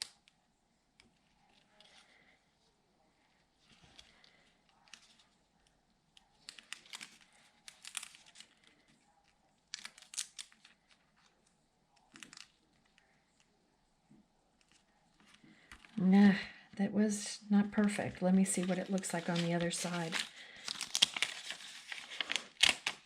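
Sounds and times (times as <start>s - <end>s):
paper crinkling and rustling: 6.2s - 13.2s, 17.8s - 23.0s.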